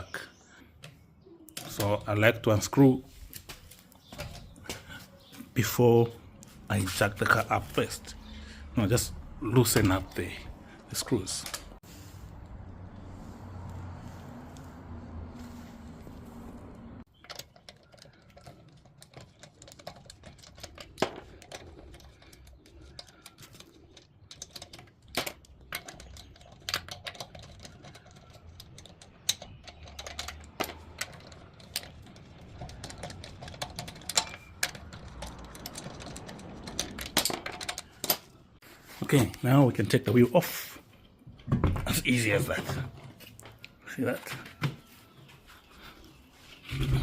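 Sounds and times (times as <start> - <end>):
wheel spanner on wheel bolts: 6.7 - 38.6
car jack being worked: 9.4 - 38.6.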